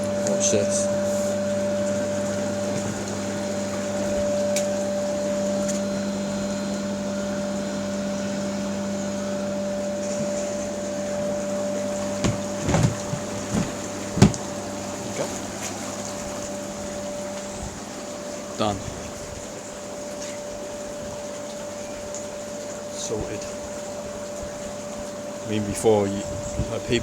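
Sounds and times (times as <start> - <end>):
muffled pump hum: 9.5 - 27.0
knocks: 12.2 - 14.6.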